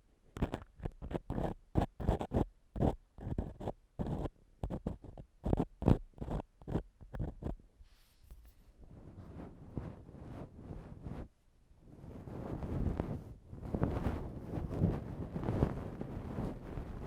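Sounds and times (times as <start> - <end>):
ear-cleaning tool scratching: 0.4 - 7.6.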